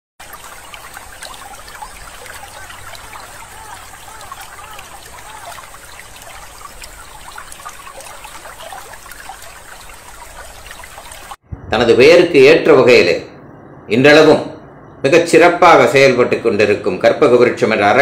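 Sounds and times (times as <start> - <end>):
water trickling and bubbling: 0.2 - 11.4.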